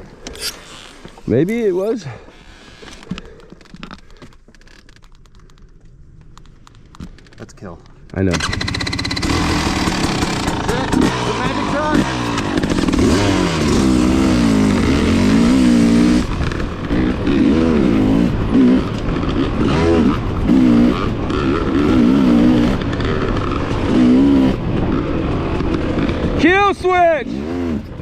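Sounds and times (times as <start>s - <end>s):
dirt bike engine revving: 8.3s - 28.0s.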